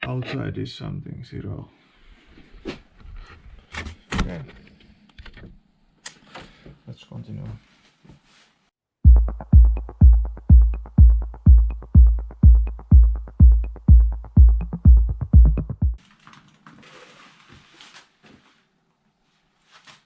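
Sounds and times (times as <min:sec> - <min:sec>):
faint scraping and handling noise: 0:06.2 - 0:08.8, 0:16.0 - 0:20.0
electronic music with kick drum: 0:09.0 - 0:16.0.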